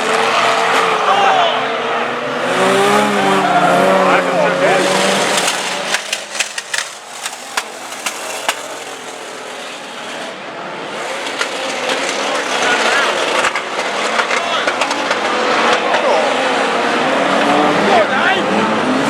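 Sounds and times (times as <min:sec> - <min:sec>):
crowd voices: 0:00.0 - 0:19.0
racing car engines revving: 0:00.0 - 0:19.0
sharp knocks and clatters: 0:05.1 - 0:09.4, 0:11.2 - 0:16.0.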